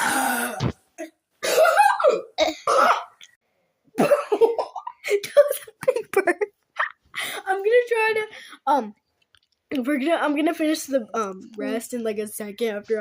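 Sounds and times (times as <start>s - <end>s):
breathy vocal sounds: 0.0s - 0.8s
girl coughing: 0.0s - 3.2s, 4.0s - 6.1s.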